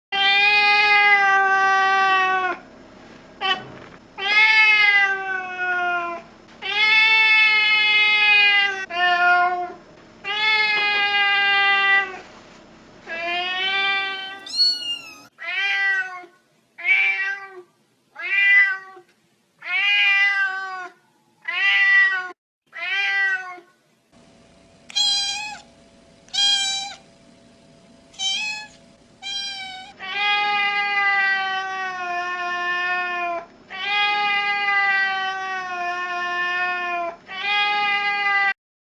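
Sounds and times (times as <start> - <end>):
cat meowing: 13.1 - 17.6, 19.6 - 23.7, 24.9 - 25.7, 26.3 - 27.0, 28.2 - 38.6.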